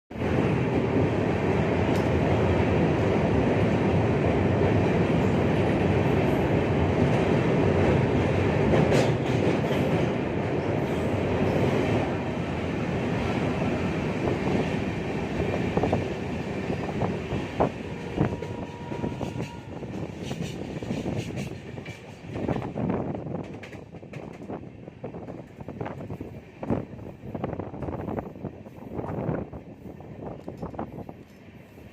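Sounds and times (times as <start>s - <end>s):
train rumbling on rails: 0.1s - 31.9s.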